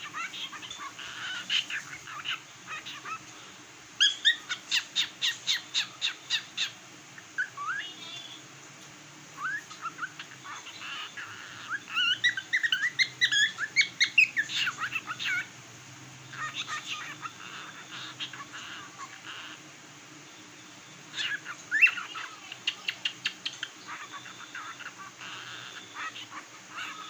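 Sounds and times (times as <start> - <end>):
cockatiel whistling and chirping: 4.0 - 6.7, 9.4 - 15.5, 21.1 - 25.0.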